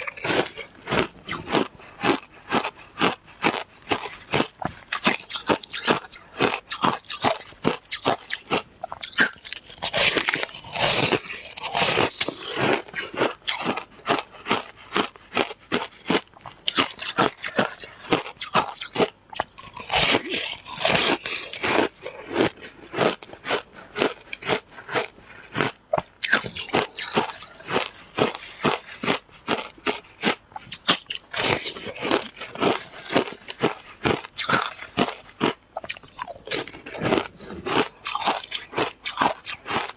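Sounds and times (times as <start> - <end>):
chewing crunchy ice: 0.0 - 39.9.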